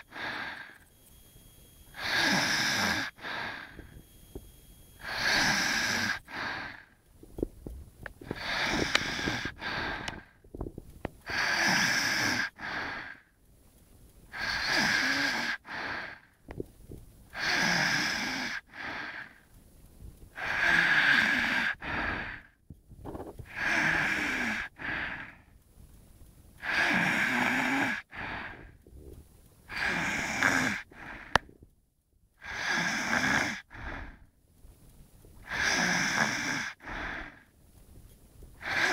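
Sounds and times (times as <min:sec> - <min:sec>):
whistling snoring breaths: 0:00.0 - 0:07.0, 0:08.2 - 0:10.4, 0:11.2 - 0:13.3, 0:14.3 - 0:16.4, 0:17.3 - 0:19.5, 0:20.3 - 0:22.6, 0:23.4 - 0:25.5, 0:26.6 - 0:28.8, 0:29.7 - 0:31.4, 0:32.4 - 0:34.3, 0:35.4 - 0:37.5, 0:38.6 - 0:38.9.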